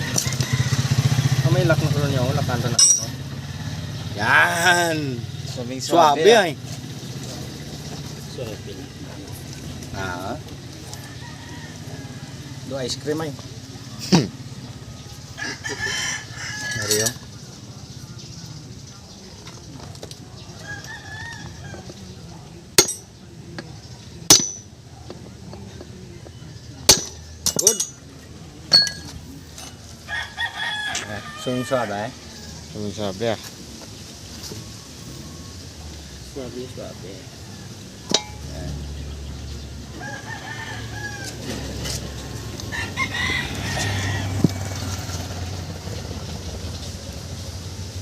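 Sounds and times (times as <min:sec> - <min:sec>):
hammer striking metal: 0:02.8 - 0:03.2, 0:22.8 - 0:23.1, 0:24.3 - 0:24.7, 0:26.9 - 0:28.0, 0:28.7 - 0:29.2, 0:38.1 - 0:38.5.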